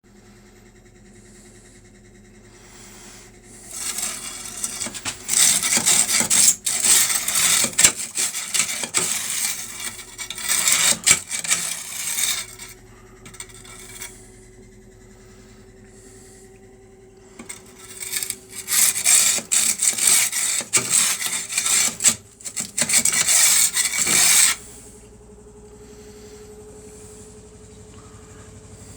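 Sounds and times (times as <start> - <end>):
faint steady hum: 0.1 - 28.9
saw blade scraping metal: 3.6 - 14.3, 17.4 - 24.9.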